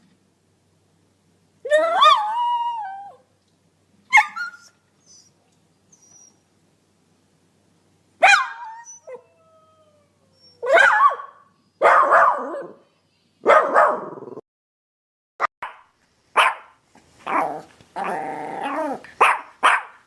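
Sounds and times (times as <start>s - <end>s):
dog yelping: 4.1s - 5.4s, 8.2s - 9.2s, 10.3s - 12.8s, 16.4s - 20.0s
dog whining: 4.1s - 6.4s, 8.6s - 10.8s, 17.2s - 19.3s
dog barking: 8.2s - 8.7s, 10.6s - 12.8s, 13.4s - 14.3s, 15.6s - 17.6s, 18.6s - 20.0s.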